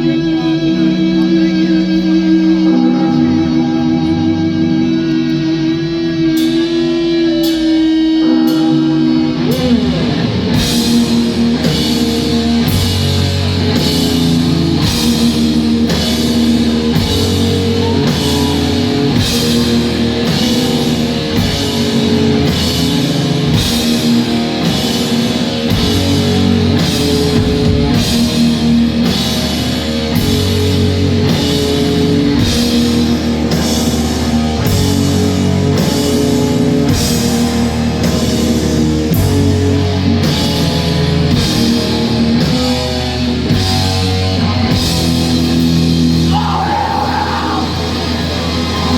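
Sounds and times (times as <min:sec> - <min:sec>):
distorted electric guitar: 0:00.0 - 0:48.9
heavy metal band playing: 0:00.0 - 0:48.9
driving drum beat: 0:06.1 - 0:48.9.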